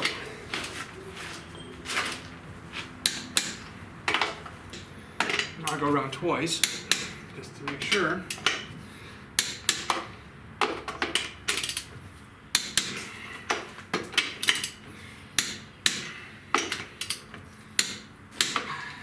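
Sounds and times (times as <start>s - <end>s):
torque wrench clicking: 11.2s - 11.9s.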